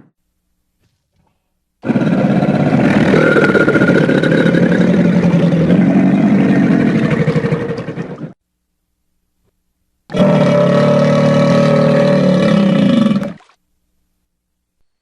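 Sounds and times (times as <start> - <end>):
monster growl: 1.8 - 8.4, 10.1 - 13.4.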